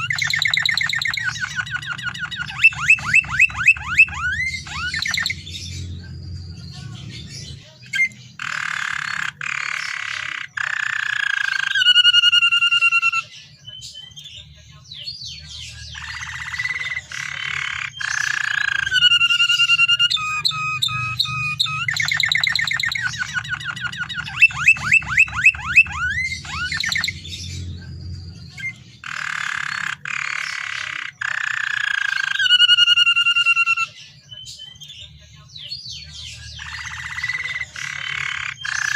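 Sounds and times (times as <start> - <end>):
canary singing: 0.0 - 38.9.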